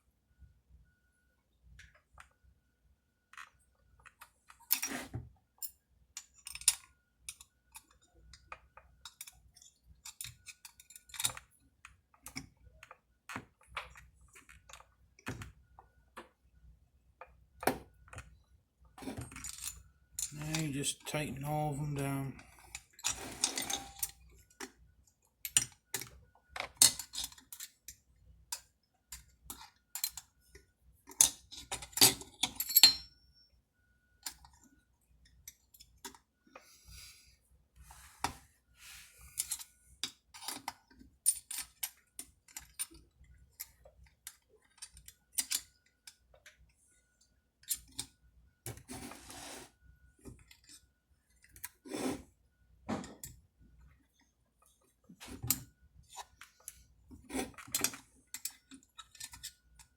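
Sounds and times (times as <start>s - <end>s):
metal tools clicking and clinking: 5.6s - 8.4s, 9.0s - 11.5s, 19.2s - 20.8s, 21.9s - 24.2s, 31.1s - 33.1s, 39.4s - 43.0s, 57.3s - 59.9s.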